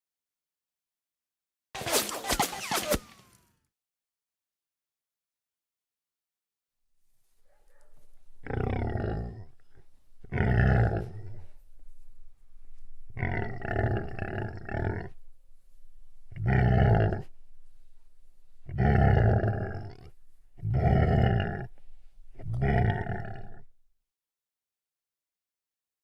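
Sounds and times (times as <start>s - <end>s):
deep animal-like roars and grunts: 8.4s - 11.6s, 13.1s - 15.2s, 16.3s - 17.3s, 18.6s - 21.8s, 22.4s - 23.7s.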